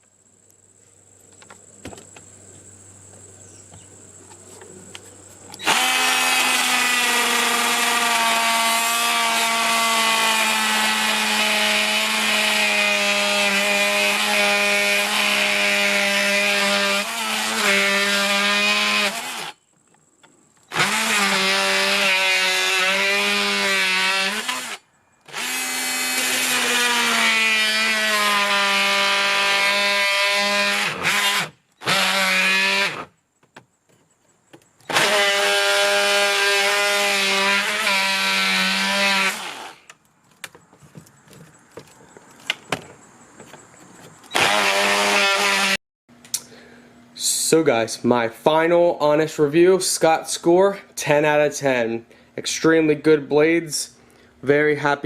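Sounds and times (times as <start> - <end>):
oscillating multi-tool cutting: 5.6 - 19.6, 20.7 - 33.1, 34.8 - 39.9, 44.3 - 45.8.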